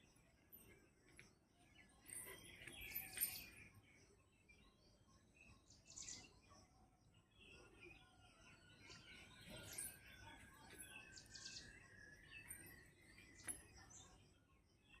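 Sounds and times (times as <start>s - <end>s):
faint bird chirps: 0.0s - 15.0s.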